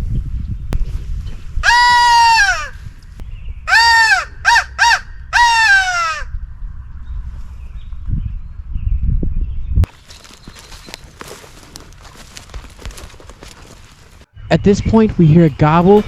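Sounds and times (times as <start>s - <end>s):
crow cawing: 1.6s - 2.9s, 3.7s - 6.5s
rustling: 9.8s - 14.5s
footsteps: 9.8s - 16.0s.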